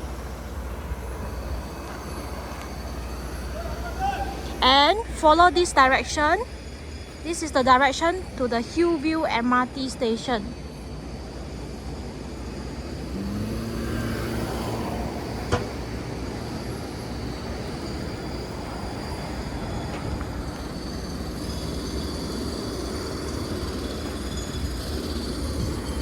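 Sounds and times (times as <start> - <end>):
passing traffic: 0.0 - 26.0.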